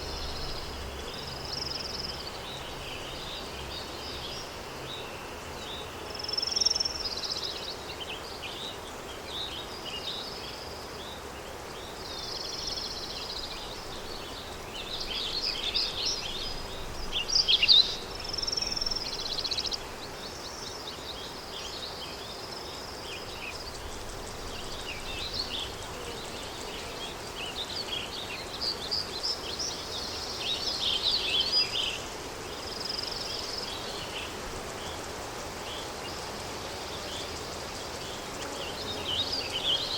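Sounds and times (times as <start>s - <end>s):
songbirds chirping and warbling: 0.0s - 39.9s.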